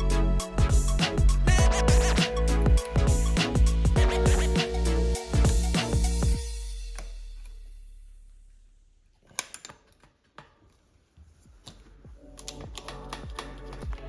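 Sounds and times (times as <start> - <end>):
background music: 0.0 - 7.5, 11.6 - 14.0.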